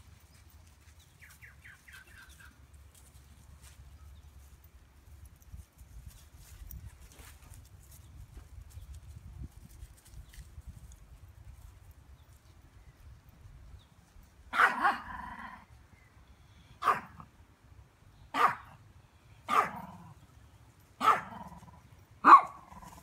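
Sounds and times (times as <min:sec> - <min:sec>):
dog barking: 0:14.5 - 0:15.1, 0:16.8 - 0:17.2, 0:18.3 - 0:18.8, 0:19.5 - 0:20.0, 0:21.0 - 0:21.4, 0:22.2 - 0:23.0.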